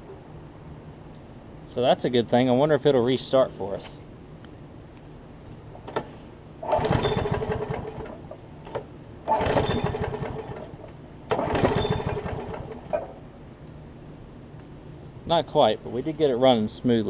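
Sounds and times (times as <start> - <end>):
mower engine cranking and sputtering: 5.8 - 13.2.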